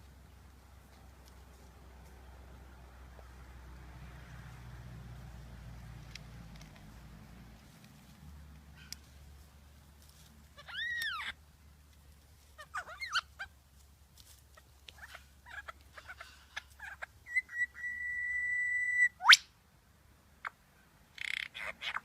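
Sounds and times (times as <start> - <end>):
bird chattering: 10.6 - 11.4, 12.6 - 13.6, 14.9 - 18.2, 21.2 - 22.0
bird chirps: 10.6 - 11.4, 12.6 - 13.5, 14.9 - 19.6
bird whistling: 17.2 - 19.5.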